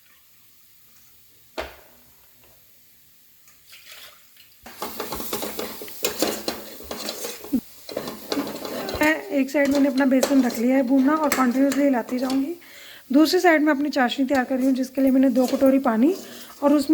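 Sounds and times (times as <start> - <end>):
utensil scraping a pan: 4.7 - 16.9.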